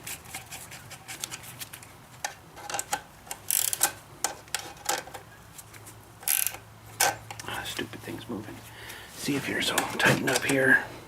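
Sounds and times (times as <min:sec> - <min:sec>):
wrenches clicking and scraping metal: 0:00.0 - 0:05.2, 0:06.2 - 0:07.5.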